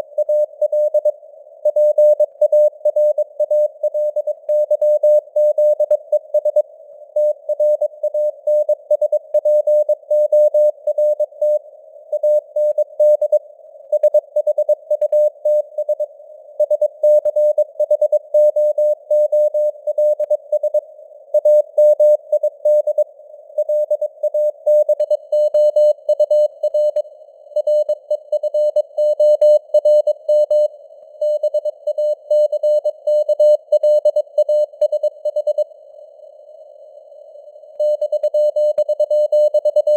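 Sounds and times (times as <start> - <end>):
morse code beeps: 23.6 - 27.0, 27.6 - 35.6, 37.8 - 39.9.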